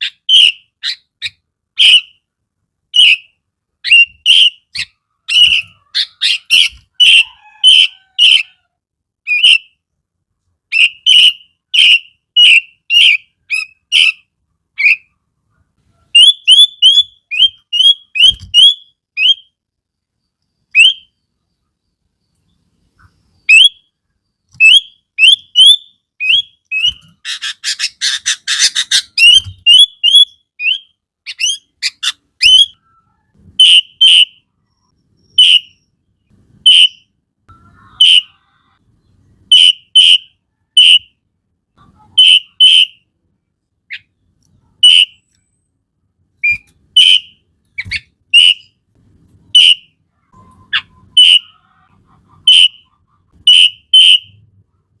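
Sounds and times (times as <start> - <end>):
bird singing whistled notes: 10.7 - 14.2, 16.1 - 19.6, 20.7 - 21.2, 24.6 - 27.1, 29.0 - 36.0.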